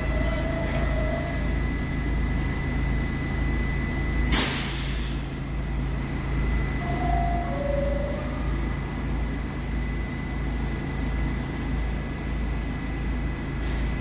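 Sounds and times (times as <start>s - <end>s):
subway train rumble and whine: 0.0s - 14.0s
air brakes hissing: 4.3s - 5.4s, 13.6s - 14.0s.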